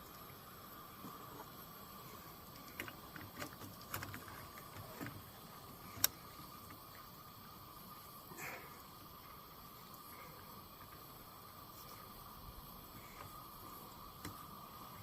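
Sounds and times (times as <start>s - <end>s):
camp stove hissing: 3.8s - 15.0s.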